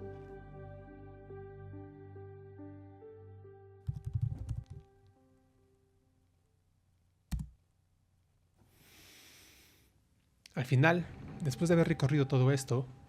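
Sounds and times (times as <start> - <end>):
soft sustained music notes: 0.0 - 6.4, 10.7 - 13.0.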